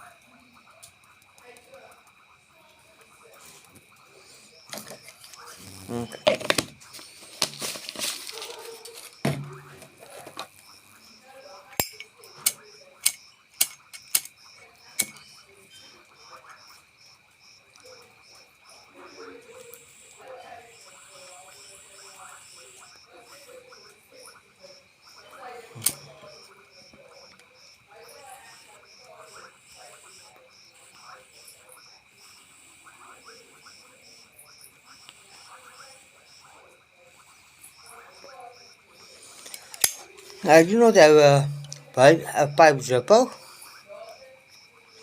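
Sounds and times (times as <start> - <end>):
frogs croaking: 0.0 - 45.0
high insect trill: 0.0 - 45.0
night creatures chirping: 8.2 - 43.9
sharp clicks: 11.8 - 14.4.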